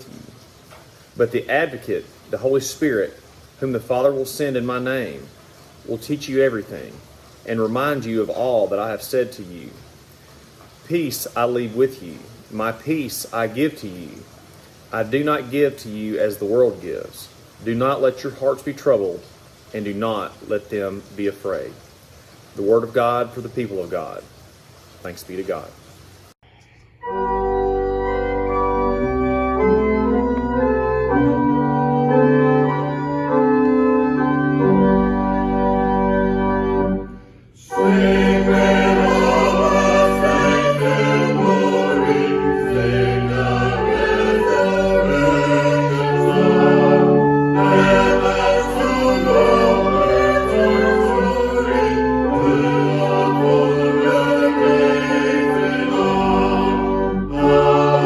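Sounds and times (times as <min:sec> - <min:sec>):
church organ chords: 0:27.0 - 0:58.0
voices singing: 0:37.4 - 0:58.0.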